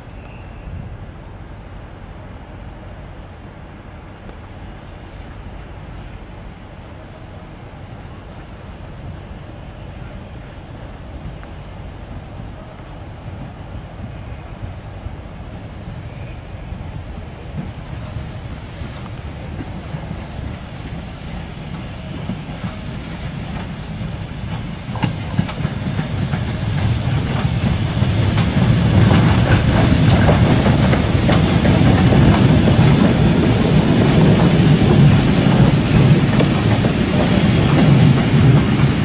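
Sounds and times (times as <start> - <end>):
train running on rails: 0.0 - 39.0
wheels clattering over rail joints: 23.4 - 39.0.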